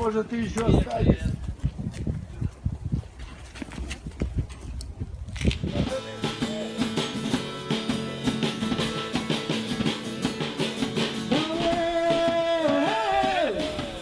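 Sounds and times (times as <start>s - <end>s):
rock music with guitar and drums: 5.6s - 14.0s.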